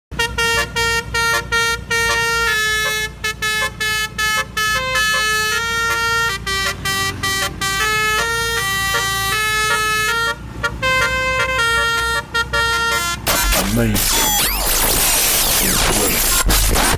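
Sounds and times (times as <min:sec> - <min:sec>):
truck air horn playing a tune: 0:00.1 - 0:13.6.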